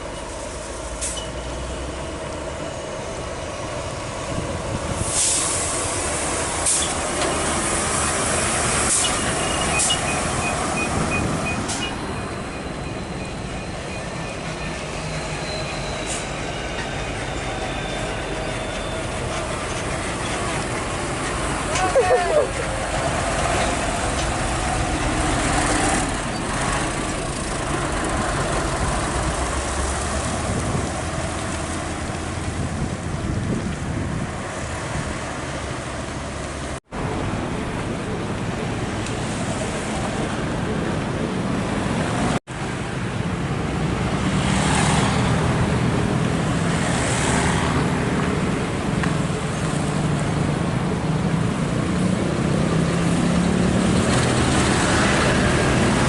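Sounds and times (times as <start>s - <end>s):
diesel traffic rumbling: 0.0s - 56.0s
brief hissing: 5.0s - 5.9s.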